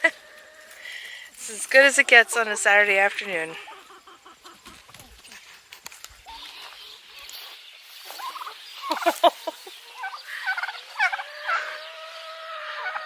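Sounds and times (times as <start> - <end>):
bird calls: 0.0 - 13.0
turkey gobbling: 1.9 - 5.2, 8.1 - 13.0.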